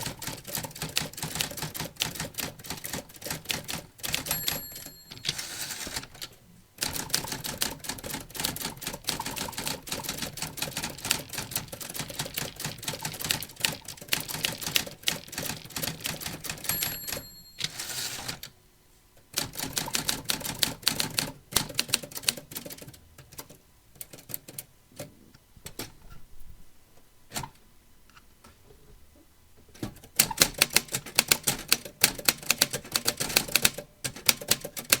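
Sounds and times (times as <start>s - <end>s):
typewriter keys clacking: 0.0s - 18.5s, 30.2s - 35.0s
typewriter bell ringing: 4.2s - 6.1s, 16.5s - 18.4s.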